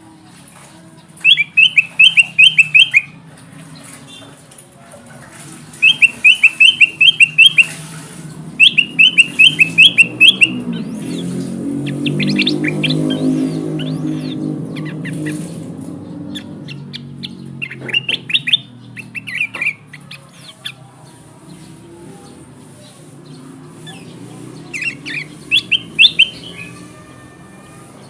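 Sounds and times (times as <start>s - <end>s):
bulbul chirping: 1.2s - 3.1s, 5.8s - 7.8s, 8.6s - 15.5s, 16.3s - 20.8s, 24.8s - 26.8s.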